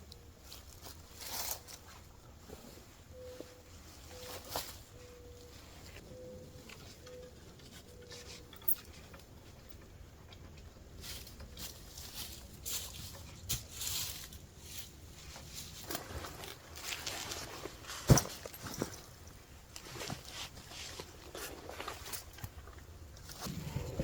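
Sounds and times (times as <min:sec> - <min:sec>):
rustling and light scuffs: 0:00.4 - 0:06.0, 0:11.0 - 0:22.4.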